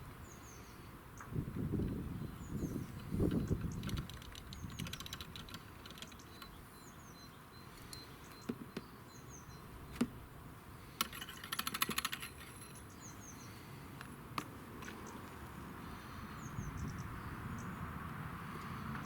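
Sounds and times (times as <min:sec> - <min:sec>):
small birds chirping: 0:00.0 - 0:14.2, 0:14.8 - 0:19.0
rapid ticks: 0:03.0 - 0:06.6, 0:11.0 - 0:12.5.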